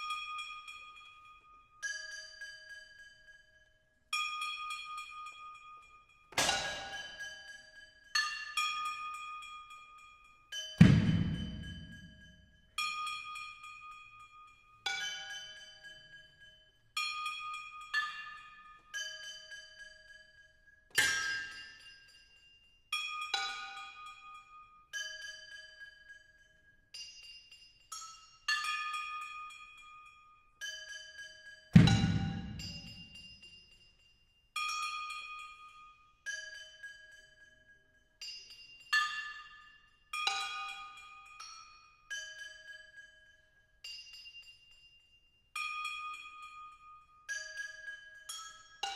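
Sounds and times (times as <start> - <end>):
bell-like metal percussion strikes: 6.3 - 9.3, 10.5 - 13.9, 30.6 - 37.2
metal objects struck ringing: 6.4 - 7.2, 10.8 - 12.6, 31.8 - 33.4.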